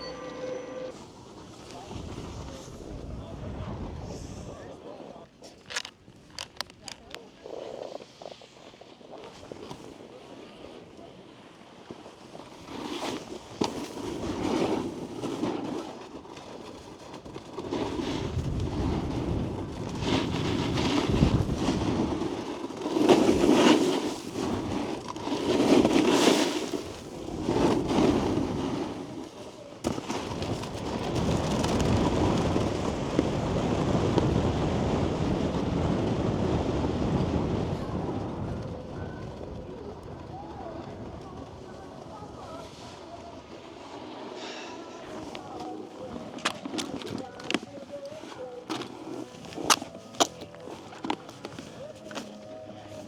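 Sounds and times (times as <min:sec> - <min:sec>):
snowboard scraping over snow: 0:00.0 - 0:05.2, 0:07.2 - 0:53.0
wind rushing over microphone: 0:01.8 - 0:04.8, 0:18.0 - 0:22.3, 0:30.2 - 0:43.4.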